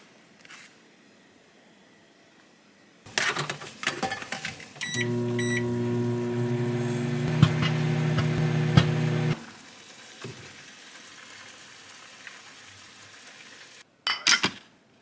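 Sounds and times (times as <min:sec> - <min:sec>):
kitchen appliance humming: 0:04.8 - 0:09.4.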